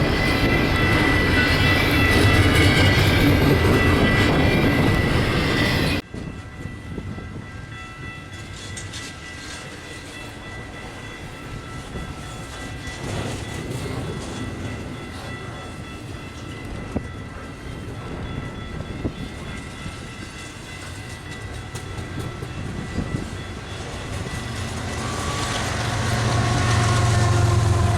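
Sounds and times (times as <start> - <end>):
train cars rolling on rails: 0.0 - 27.9.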